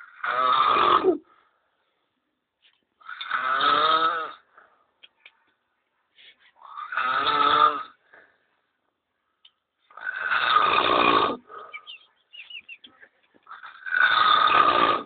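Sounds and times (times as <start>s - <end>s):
man snoring loudly: 0.0s - 1.2s, 3.0s - 4.4s, 6.6s - 8.0s, 10.0s - 11.5s, 13.5s - 15.0s.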